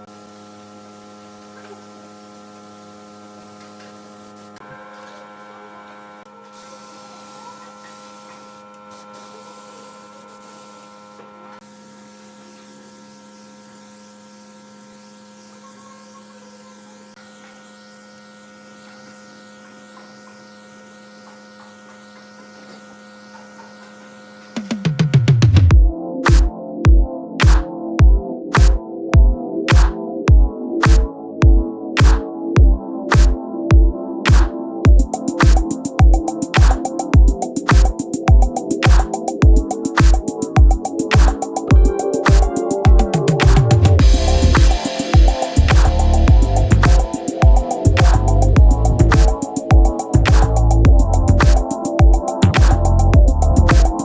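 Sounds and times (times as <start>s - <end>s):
electrical hum: 34.9s - 54.0s.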